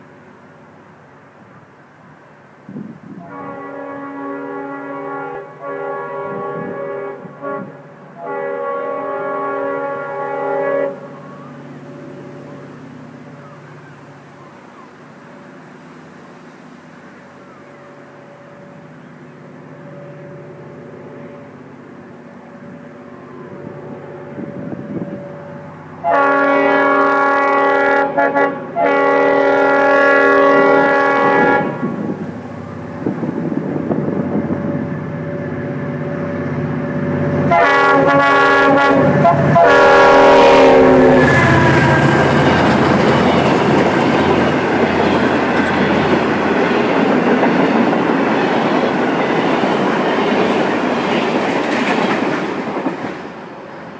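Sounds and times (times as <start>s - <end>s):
locomotive air horn blasts: 3.1s - 11.2s, 23.5s - 32.2s, 37.4s - 43.1s
train wheels clattering over rail joints: 41.8s - 53.5s.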